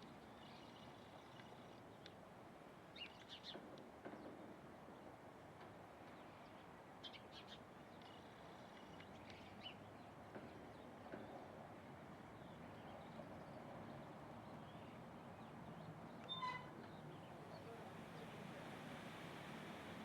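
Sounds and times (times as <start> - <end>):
steady background hiss: 17.1 - 20.0.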